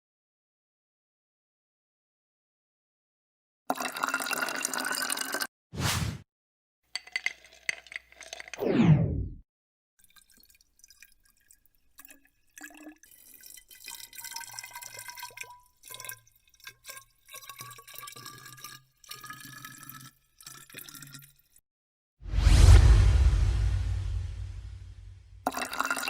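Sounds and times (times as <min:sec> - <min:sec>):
liquid pouring into a cup: 0:03.7 - 0:05.5, 0:10.0 - 0:21.6, 0:25.4 - 0:26.0
loud rushing noise: 0:22.3 - 0:25.4.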